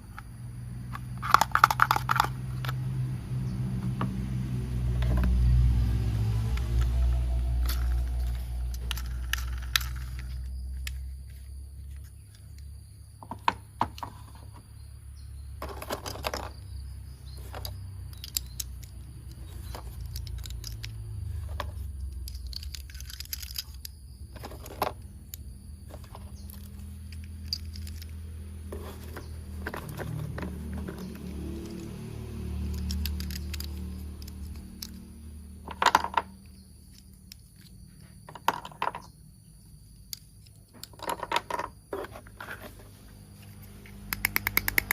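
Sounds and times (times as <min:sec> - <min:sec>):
low steady hum: 0:00.0 - 0:13.2
plastic toy parts clicking: 0:00.9 - 0:02.8, 0:07.6 - 0:12.7, 0:17.4 - 0:21.0, 0:21.6 - 0:28.2, 0:32.6 - 0:35.0, 0:36.9 - 0:37.8, 0:40.0 - 0:41.6, 0:44.1 - 0:44.9.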